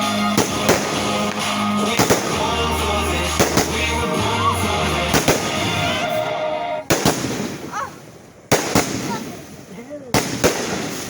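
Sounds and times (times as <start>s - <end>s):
loud music with heavy bass: 0.0s - 6.9s
fireworks bangs: 0.0s - 11.0s.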